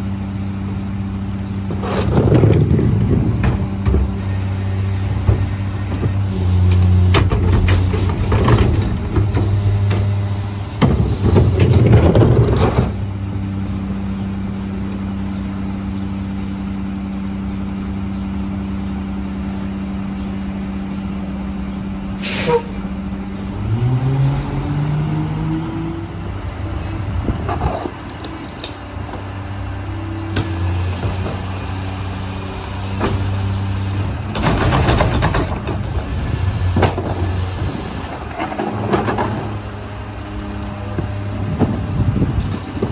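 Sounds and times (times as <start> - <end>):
garbage truck humming: 0.0 - 42.9
garbage truck clattering and crunching: 0.7 - 13.7, 26.5 - 42.9
rattling clatter: 5.2 - 10.2, 34.0 - 36.0.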